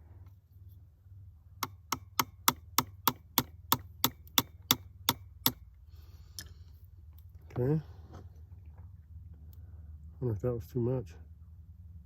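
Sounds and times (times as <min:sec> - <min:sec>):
hammer tapping metal: 0:01.6 - 0:05.6.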